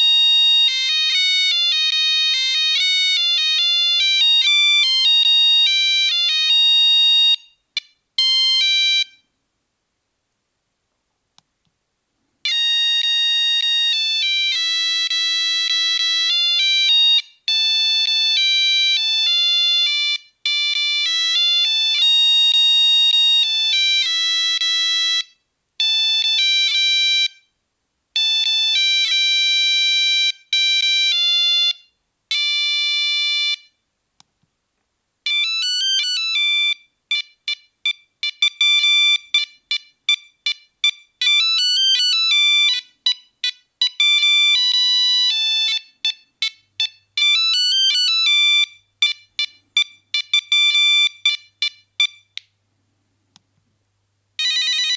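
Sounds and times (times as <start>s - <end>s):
monophonic phone ringtone: 12.5s - 27.4s, 35.3s - 52.4s, 54.4s - 54.9s.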